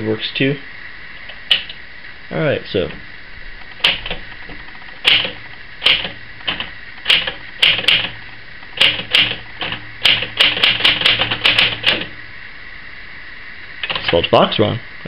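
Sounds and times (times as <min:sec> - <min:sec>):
typewriter key strikes: 0:05.0 - 0:08.1, 0:08.8 - 0:12.1.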